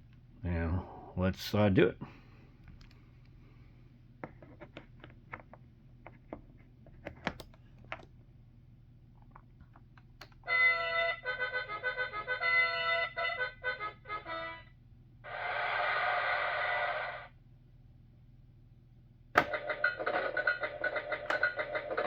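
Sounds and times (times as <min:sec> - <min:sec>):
toy electronic jingle: 0:10.5 - 0:14.6.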